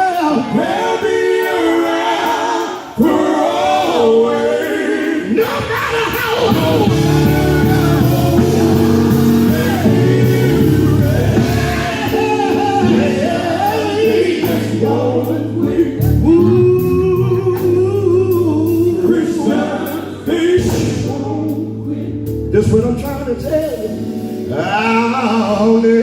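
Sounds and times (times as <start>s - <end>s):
gospel group singing in harmony: 0.0s - 26.0s
sharp beats: 6.1s - 13.2s
band playing low chords: 6.1s - 26.0s.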